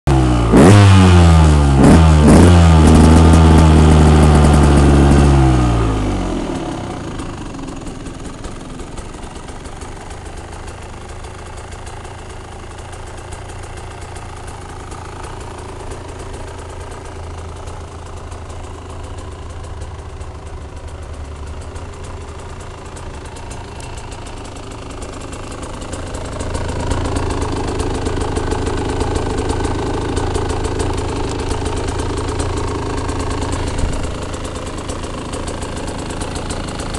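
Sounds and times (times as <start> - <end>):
two-stroke engine revving and idling: 0.1 - 36.9.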